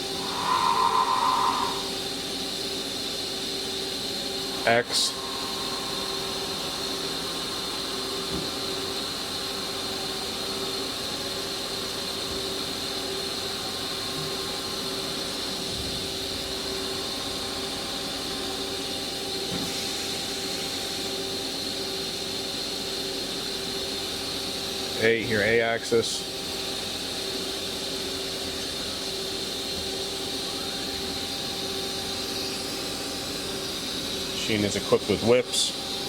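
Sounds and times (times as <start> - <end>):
machine hum with high whine: 0.0 - 19.4.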